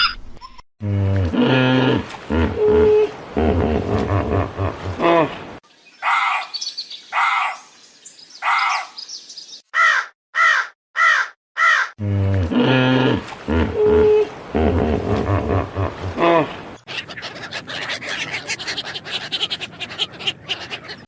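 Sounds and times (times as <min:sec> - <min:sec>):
deep animal calling: 0:00.8 - 0:05.4, 0:09.8 - 0:21.0
crow cawing: 0:09.7 - 0:12.0.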